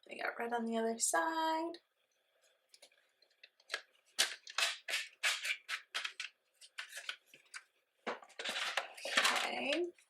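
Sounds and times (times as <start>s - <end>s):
packaging rustling and clicking: 3.3s - 9.9s.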